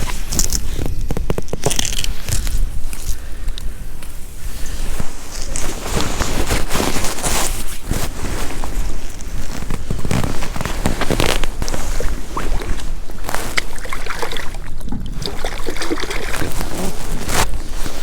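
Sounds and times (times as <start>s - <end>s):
wind buffeting microphone: 0.0s - 18.0s
water splashing in ice hole: 11.0s - 17.7s.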